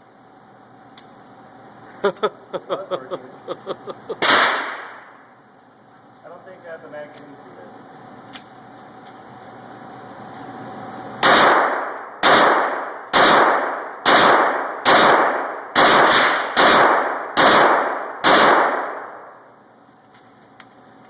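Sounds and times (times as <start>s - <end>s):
pistol shots echoing: 4.2s - 5.1s, 11.2s - 19.4s.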